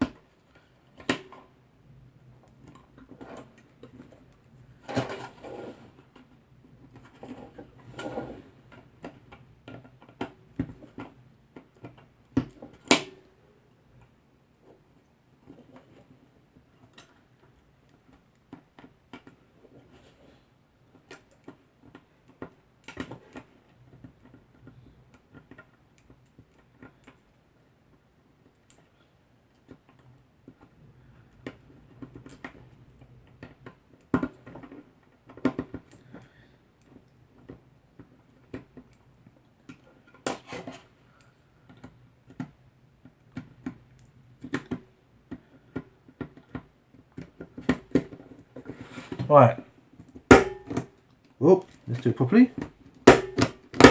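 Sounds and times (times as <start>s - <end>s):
hands clicking and tapping cable parts: 8.7s - 13.2s, 16.8s - 19.4s, 20.9s - 40.4s, 41.2s - 48.8s, 52.6s - 53.9s
sharp knocks: 50.3s - 50.9s, 53.1s - 53.9s.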